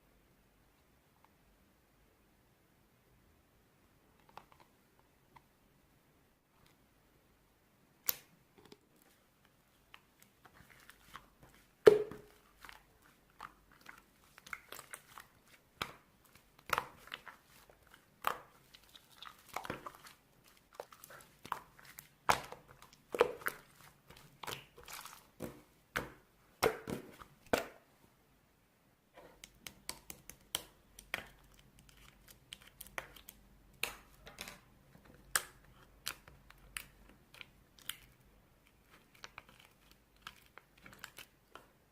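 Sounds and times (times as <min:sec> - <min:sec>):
crinkling and tearing: 0:35.3 - 0:41.6.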